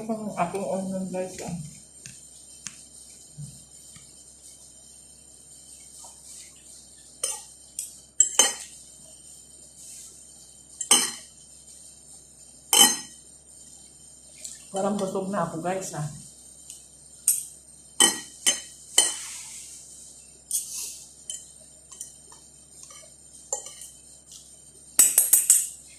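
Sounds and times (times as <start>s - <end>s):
utensils clinking on a plate: 8.2s - 8.7s, 10.8s - 11.3s, 12.8s - 13.1s, 22.8s - 24.0s.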